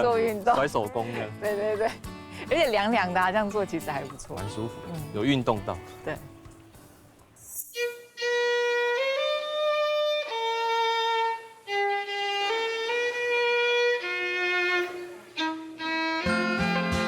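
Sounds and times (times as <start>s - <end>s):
solo violin slow melody: 7.7s - 17.0s
strummed guitar: 16.2s - 17.0s.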